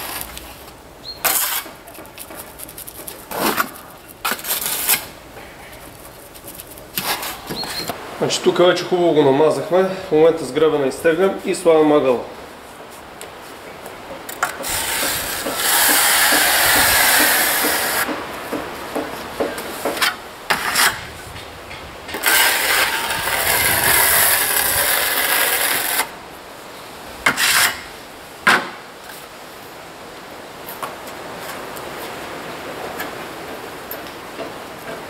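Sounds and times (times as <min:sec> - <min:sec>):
trowel scraping adhesive: 0:01.2 - 0:05.1, 0:14.4 - 0:18.1, 0:22.1 - 0:26.1, 0:27.3 - 0:27.9.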